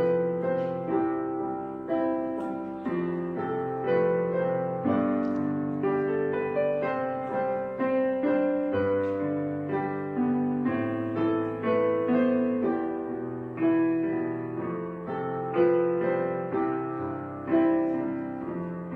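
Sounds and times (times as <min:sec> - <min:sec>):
gentle solo piano piece: 0:00.0 - 0:18.9.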